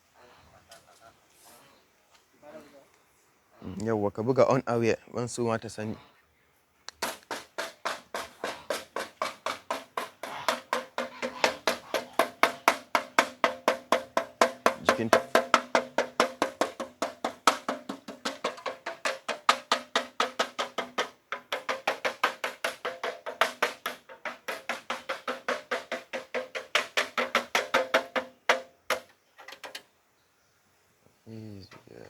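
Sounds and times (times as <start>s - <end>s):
object beaten rapidly by hand: 7.0s - 29.0s.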